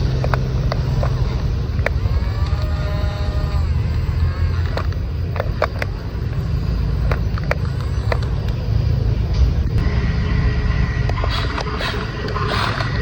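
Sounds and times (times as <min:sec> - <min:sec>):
sharp clicks: 0:00.0 - 0:09.8
low motor rumble: 0:00.0 - 0:13.0
motor whine: 0:00.0 - 0:13.0.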